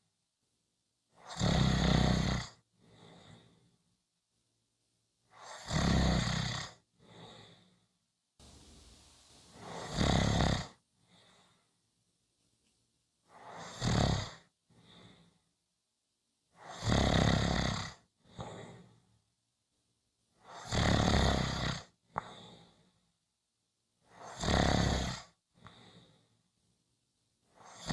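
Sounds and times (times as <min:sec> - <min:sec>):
quiet breath: 0:02.8 - 0:04.0, 0:07.0 - 0:11.9, 0:14.6 - 0:15.6, 0:18.2 - 0:19.2, 0:22.1 - 0:23.2, 0:25.5 - 0:26.6
person snoring: 0:09.5 - 0:10.7.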